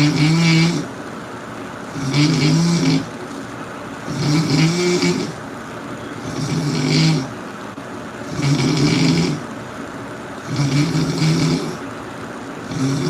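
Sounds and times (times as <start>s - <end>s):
person snoring loudly: 0.0s - 0.9s, 1.9s - 3.1s, 4.1s - 5.4s, 6.2s - 7.4s, 8.3s - 9.4s, 10.4s - 11.8s, 12.6s - 13.0s.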